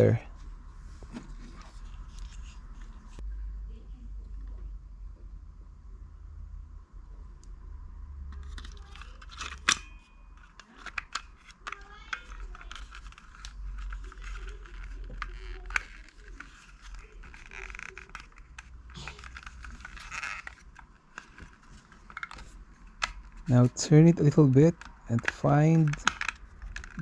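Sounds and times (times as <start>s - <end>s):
plastic casing clicking: 10.4s - 27.0s
low steady hum: 23.0s - 27.0s.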